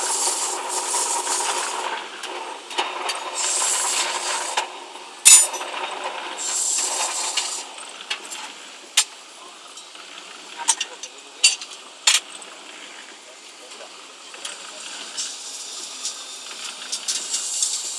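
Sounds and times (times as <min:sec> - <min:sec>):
sharp metallic clank: 0:05.3 - 0:05.7.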